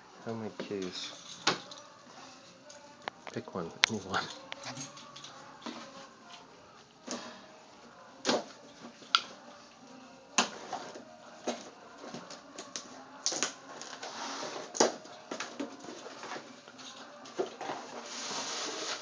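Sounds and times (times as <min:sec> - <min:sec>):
gift being opened: 0:01.0 - 0:06.4.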